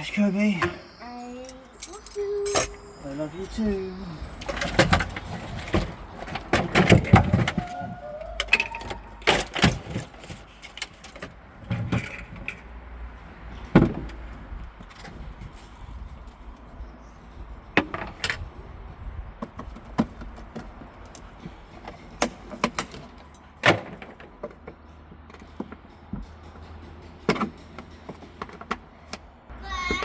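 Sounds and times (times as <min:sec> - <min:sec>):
metallic clinks of hand tools: 0:01.4 - 0:03.6.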